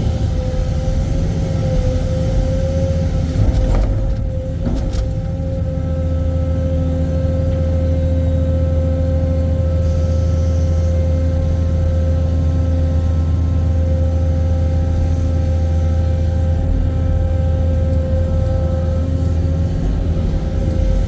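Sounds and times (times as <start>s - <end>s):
excavator engine running: 0.0s - 21.0s
steady whine: 0.0s - 21.0s.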